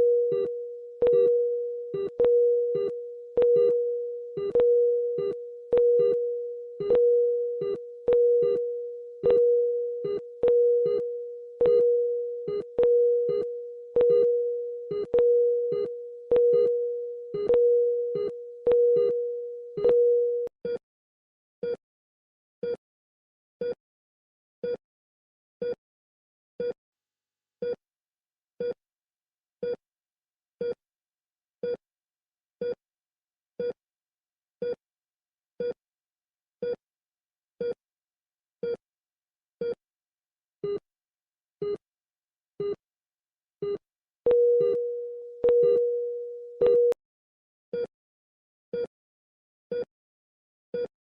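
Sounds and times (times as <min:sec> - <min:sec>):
long steady alarm tone: 0:00.0 - 0:20.5, 0:44.3 - 0:47.0
patient monitor beeps: 0:00.0 - 0:20.8, 0:43.6 - 0:47.0.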